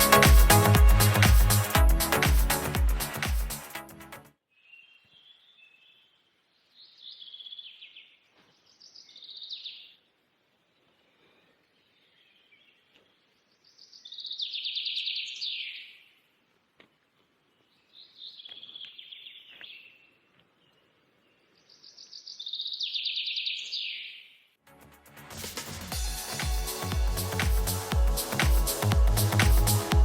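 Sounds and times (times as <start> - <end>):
songbird singing: 4.5 - 10.1, 10.7 - 16.3, 17.4 - 24.4.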